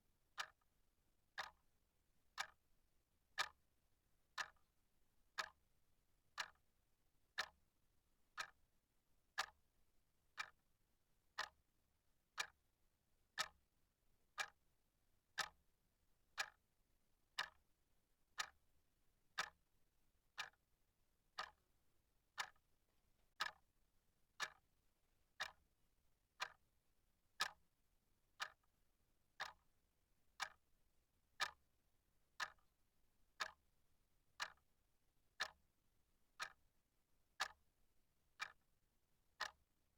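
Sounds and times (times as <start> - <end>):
clock ticking: 1.4 - 1.6, 2.4 - 2.6, 3.4 - 3.6, 4.4 - 4.6, 5.4 - 5.6, 6.4 - 6.6, 7.4 - 7.6, 8.4 - 8.6, 9.4 - 9.6, 10.4 - 10.6, 11.4 - 11.6, 12.4 - 12.6, 13.4 - 13.6, 14.4 - 14.6, 15.4 - 15.6, 16.4 - 16.6, 17.4 - 17.6, 18.4 - 18.6, 19.4 - 19.6, 20.4 - 20.6, 21.4 - 21.6, 22.4 - 22.6, 23.4 - 23.6, 24.4 - 24.6, 25.4 - 25.6, 26.4 - 26.6, 27.4 - 27.6, 28.4 - 28.6, 29.4 - 29.6, 30.4 - 30.6, 31.4 - 31.6, 32.4 - 32.7, 33.4 - 33.6, 34.4 - 34.6, 35.4 - 35.6, 36.4 - 36.6, 37.4 - 37.6, 38.4 - 38.6, 39.4 - 39.6.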